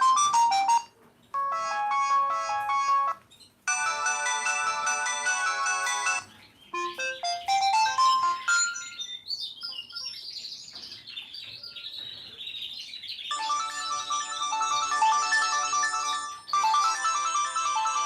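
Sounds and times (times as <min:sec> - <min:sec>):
polyphonic phone ringtone: 0:00.0 - 0:09.0, 0:13.3 - 0:18.0.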